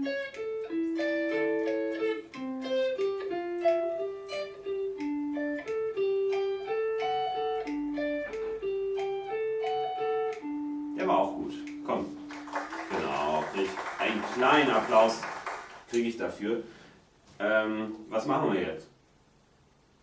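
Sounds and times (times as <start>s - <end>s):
guitar picking a melody: 0.0s - 15.2s.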